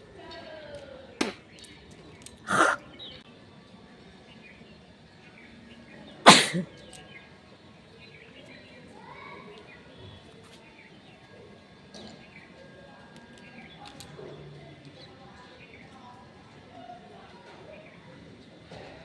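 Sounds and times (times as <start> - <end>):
woman sneezing: 2.5 - 2.8, 6.3 - 6.7.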